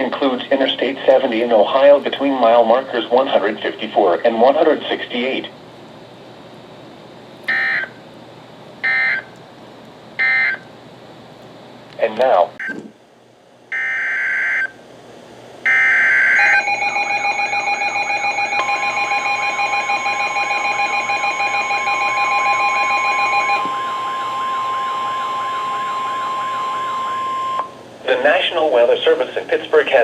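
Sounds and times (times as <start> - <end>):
warbling alert radio alarms: 7.5 - 7.9, 8.8 - 9.3, 10.2 - 10.6, 13.7 - 14.7, 15.7 - 27.8
steady warning alarm tone: 7.5 - 8.0, 8.8 - 9.3, 10.2 - 10.7, 13.7 - 14.8, 15.6 - 27.8.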